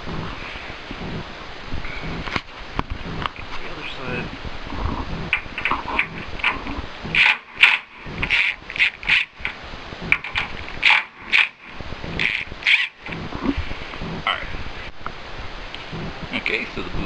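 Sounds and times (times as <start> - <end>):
hand tool backing out screws: 7.2 - 13.0.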